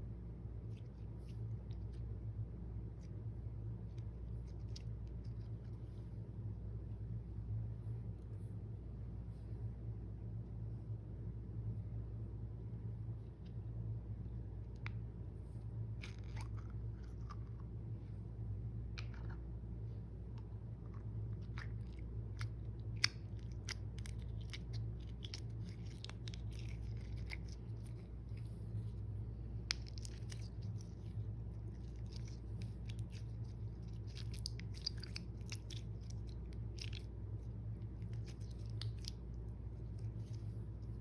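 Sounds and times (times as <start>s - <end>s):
low steady hum: 0.0s - 41.0s
slime squishing: 14.7s - 41.0s.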